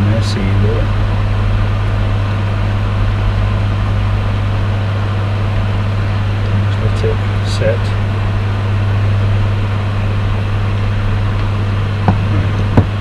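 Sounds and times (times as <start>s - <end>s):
loud low hum: 0.0s - 13.0s.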